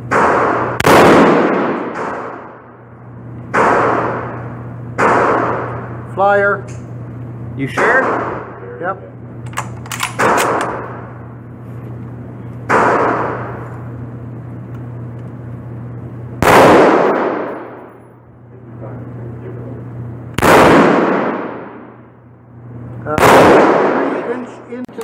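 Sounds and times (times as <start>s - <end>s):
rifle shots echoing indoors: 0.0s - 2.8s, 3.5s - 6.0s, 7.7s - 8.6s, 9.5s - 11.1s, 12.7s - 13.6s, 16.4s - 18.0s, 20.3s - 22.1s, 23.1s - 24.6s.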